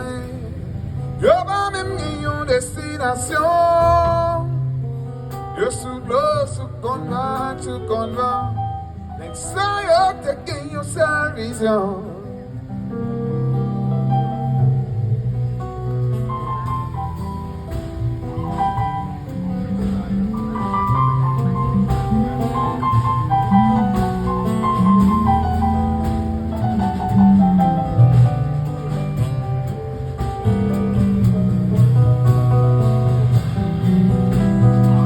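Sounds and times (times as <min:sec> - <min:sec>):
bass notes: 0:00.0 - 0:35.0
melodic lead line: 0:12.3 - 0:35.0
light percussion: 0:14.5 - 0:35.0.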